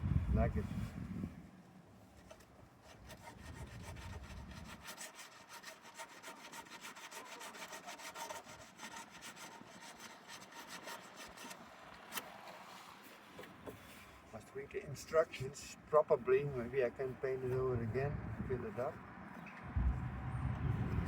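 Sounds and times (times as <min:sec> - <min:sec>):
sandpaper rasping on metal: 0:02.2 - 0:11.6.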